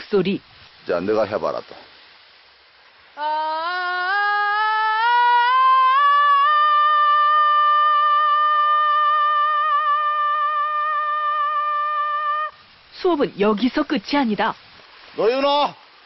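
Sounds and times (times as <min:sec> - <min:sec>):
boy singing vocal warm-up: 0:03.2 - 0:12.6.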